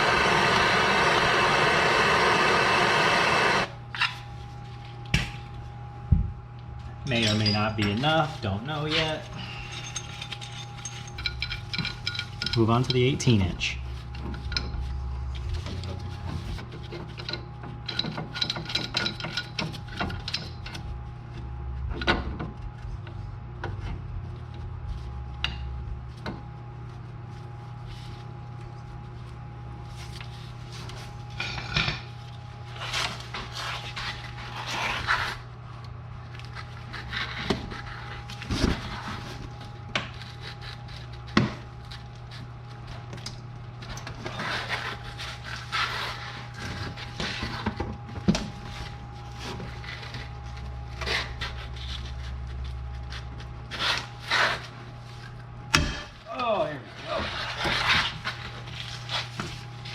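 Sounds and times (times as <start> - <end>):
low hum: 0.0 - 19.2
metal clinks and knocks: 7.1 - 8.2, 8.9 - 13.3.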